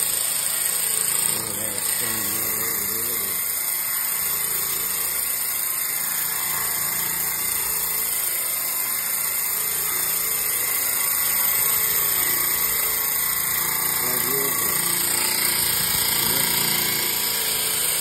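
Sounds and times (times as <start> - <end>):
electric motor hum: 0.0 - 18.0
wheels scrubbing bandsaw blade: 0.0 - 18.0.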